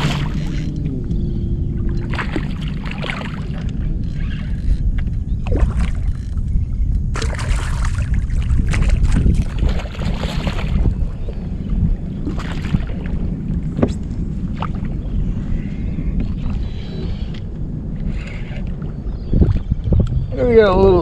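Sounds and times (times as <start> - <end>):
water splashing against a kayak: 0.0 - 20.2
wind rumble on microphone: 0.0 - 21.0.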